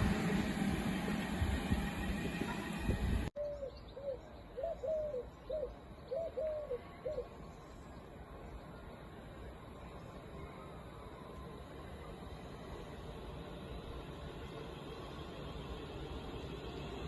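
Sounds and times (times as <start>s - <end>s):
train noise: 0.0s - 3.3s, 7.2s - 17.0s.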